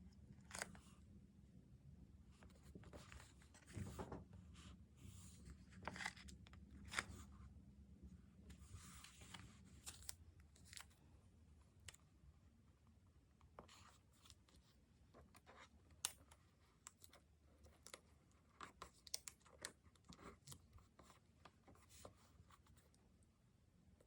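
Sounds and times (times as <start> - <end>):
stickers and paper rustling: 8.5 - 11.0.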